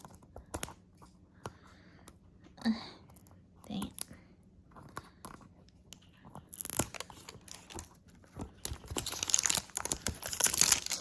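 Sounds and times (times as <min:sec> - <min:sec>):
plastic wrapping crinkling: 0:06.5 - 0:11.0.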